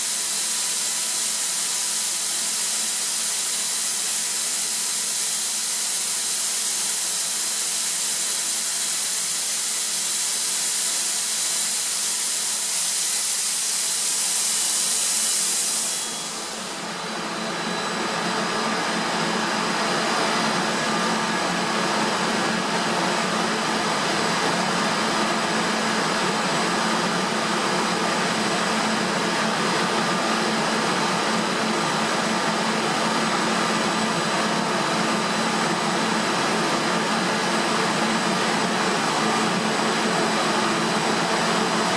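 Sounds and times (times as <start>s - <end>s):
air hissing from compressor: 0.0s - 17.4s
air compressor hum and whine: 0.0s - 41.9s.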